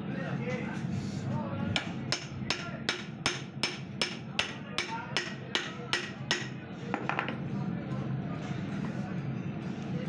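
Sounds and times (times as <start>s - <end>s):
hammering on metal: 1.8s - 7.2s.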